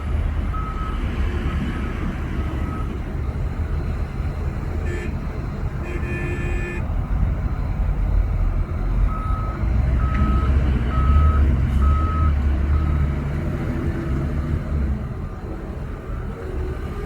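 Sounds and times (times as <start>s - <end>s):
heavy diesel machinery rumbling: 0.0s - 17.0s
reversing alarm beeps: 0.5s - 3.4s, 9.1s - 13.1s.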